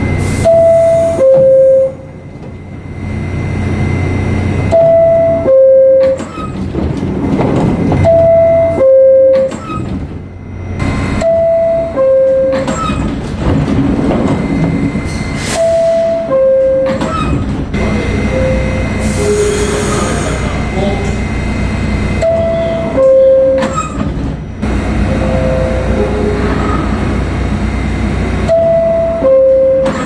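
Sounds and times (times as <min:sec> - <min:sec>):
low rumble of train: 0:00.0 - 0:30.0
two-note door chime: 0:18.2 - 0:19.8, 0:25.0 - 0:27.4.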